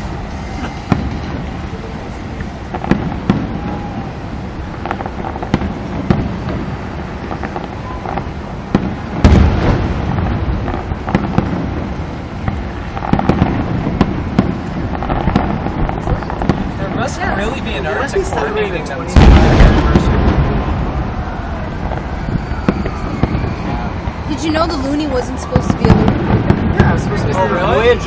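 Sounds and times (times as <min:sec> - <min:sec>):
firework bangs: 0:00.0 - 0:28.0
steady low rumble: 0:00.0 - 0:28.0.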